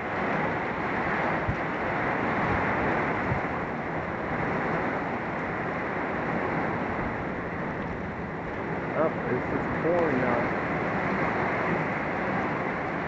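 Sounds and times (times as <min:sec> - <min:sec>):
heavy rain pouring: 0:00.0 - 0:13.0
wind buffeting microphone: 0:00.0 - 0:13.0.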